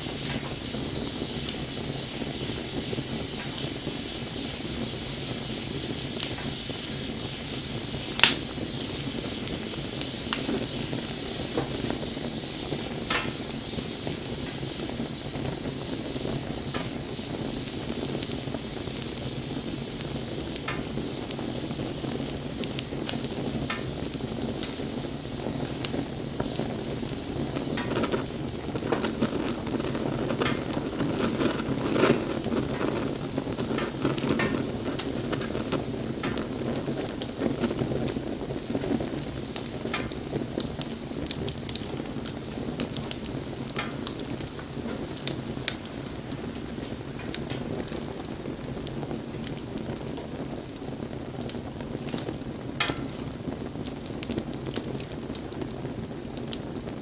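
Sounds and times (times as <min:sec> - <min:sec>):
bonfire flames rushing: 0:00.0 - 0:57.0
fire crackles and pops: 0:00.0 - 0:57.0.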